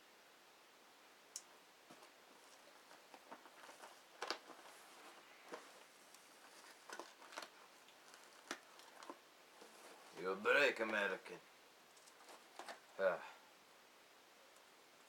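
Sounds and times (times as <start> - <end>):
hands handling cardboard box: 1.9 - 11.2, 12.0 - 12.9.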